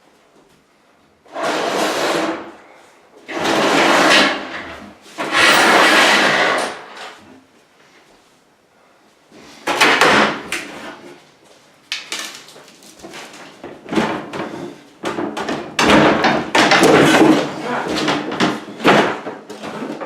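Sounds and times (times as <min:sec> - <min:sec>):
wooden cabinets knocking and banging: 0:09.6 - 0:11.0, 0:12.0 - 0:20.0.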